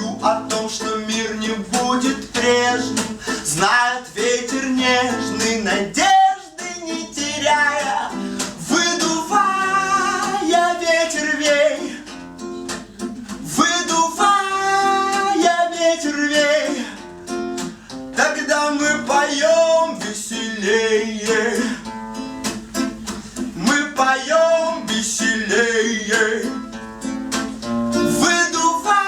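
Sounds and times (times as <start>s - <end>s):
person singing: 0.0s - 12.2s, 13.2s - 17.0s, 18.2s - 21.9s, 23.6s - 26.7s, 28.0s - 29.0s
strummed acoustic guitar: 0.0s - 29.0s.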